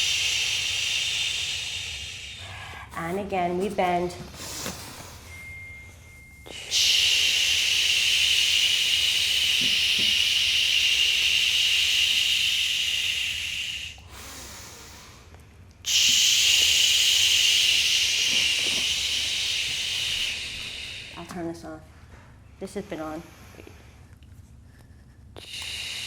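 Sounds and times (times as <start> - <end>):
loud steady hiss: 6.5 - 15.0, 15.9 - 21.2.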